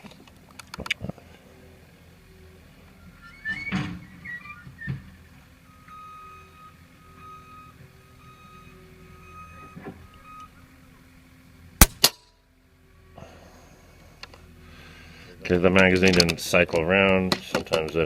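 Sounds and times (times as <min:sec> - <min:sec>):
faint steady beep: 0:05.4 - 0:10.7
sharp crack: 0:11.8 - 0:12.3.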